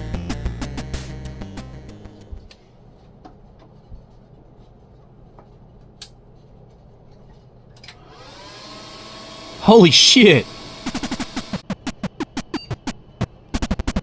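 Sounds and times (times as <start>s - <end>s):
music: 0.0s - 2.5s, 10.8s - 14.0s.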